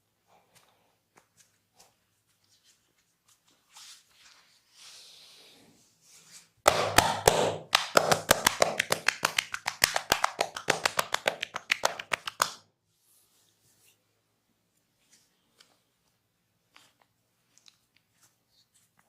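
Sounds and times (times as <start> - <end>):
hands rubbing skin: 6.7 - 12.6
palms slapping body: 6.7 - 12.6.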